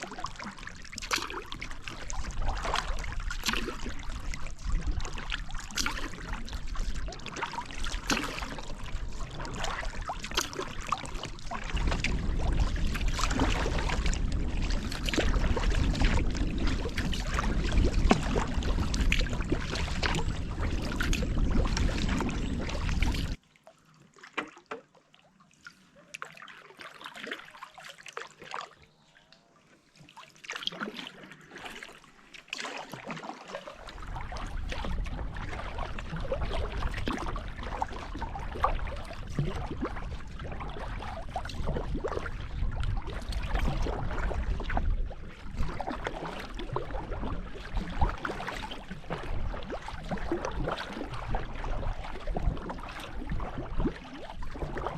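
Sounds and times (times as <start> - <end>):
paddle splashing in water: 0.0 - 54.9
low rumble: 11.5 - 23.4.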